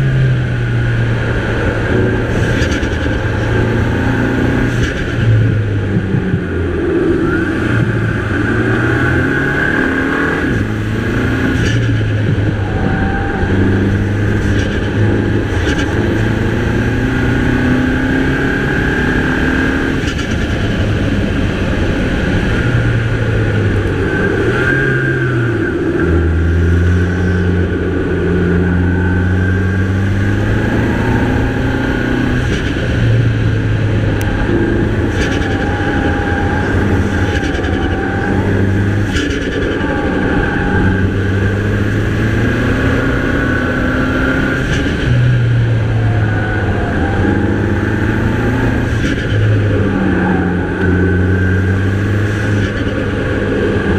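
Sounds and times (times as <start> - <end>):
car engine revving and shifting: 0.0 - 53.9.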